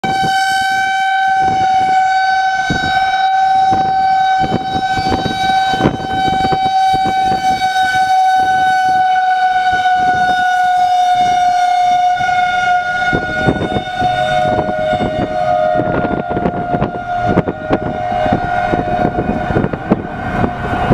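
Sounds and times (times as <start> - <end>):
warning siren steady tone: 0.0 - 20.9.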